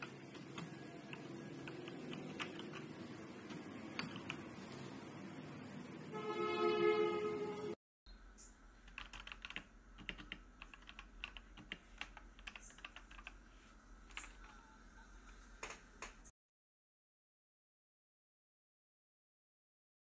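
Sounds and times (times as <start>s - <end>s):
mechanical keyboard typing: 0.0s - 3.0s, 4.0s - 4.4s, 8.8s - 13.4s, 14.0s - 14.7s, 15.3s - 16.3s.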